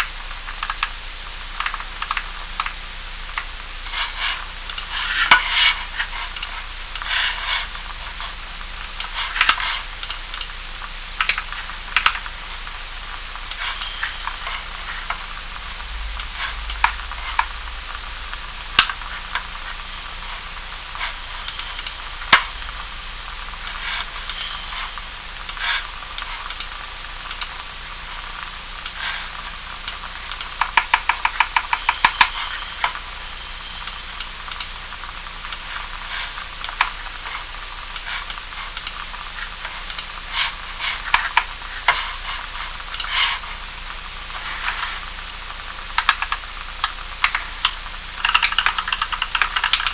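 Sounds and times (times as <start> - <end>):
steady hiss: 0.0 - 49.9
mechanical keyboard typing: 4.7 - 7.6, 9.0 - 10.6, 11.2 - 12.4, 13.4 - 17.7, 21.0 - 27.7, 29.8 - 33.0, 33.8 - 34.8, 35.5 - 42.1, 42.9 - 43.4, 45.9 - 49.9.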